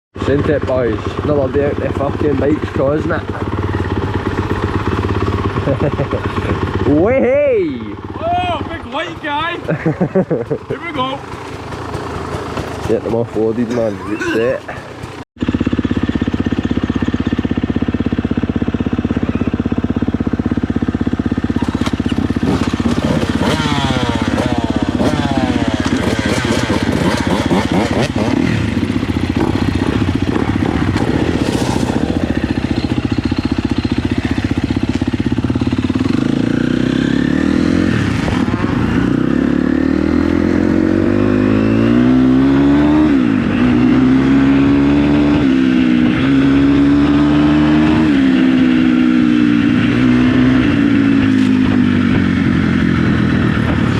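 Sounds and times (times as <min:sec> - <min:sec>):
dirt bike idling: 0:00.2 - 0:42.0
dirt bikes revving: 0:00.2 - 0:53.9.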